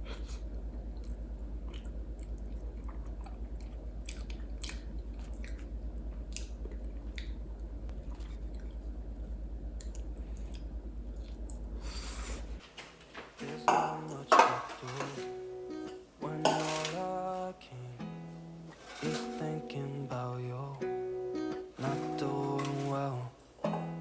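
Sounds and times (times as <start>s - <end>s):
person chewing food: 0.0s - 12.6s
low electrical hum: 0.0s - 24.0s.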